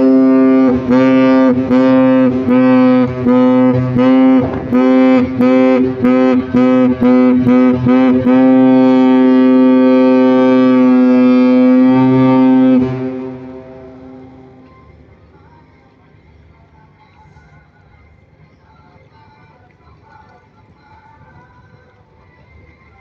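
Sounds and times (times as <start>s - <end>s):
ship's horn blasts: 0.0s - 15.1s.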